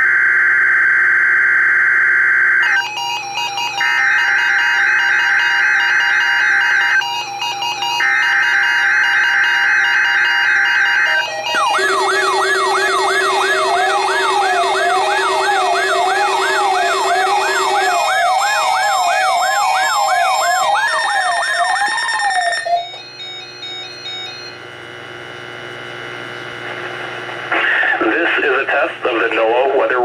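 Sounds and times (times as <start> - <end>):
siren wail: 0.0 - 23.8
siren yelp: 0.0 - 24.4.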